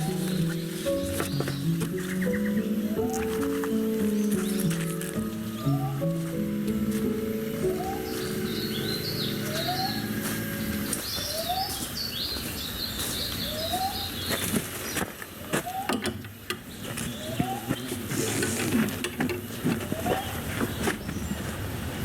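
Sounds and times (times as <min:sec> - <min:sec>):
high chirping: 0:00.0 - 0:14.5.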